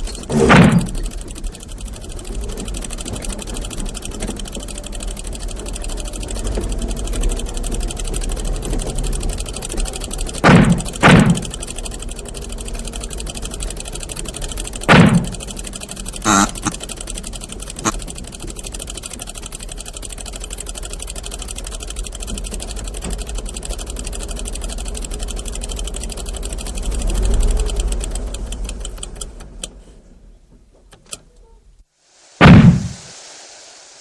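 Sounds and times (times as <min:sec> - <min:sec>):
cartoon engine rattling chug: 0:00.0 - 0:29.7
engine clicks: 0:00.0 - 0:31.5
sharp bang: 0:10.4 - 0:11.5, 0:14.9 - 0:15.4, 0:32.4 - 0:33.2.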